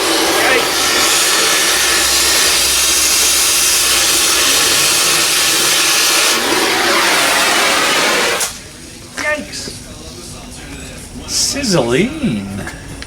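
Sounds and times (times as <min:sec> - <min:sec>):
cutting torch hissing: 0:00.0 - 0:10.4.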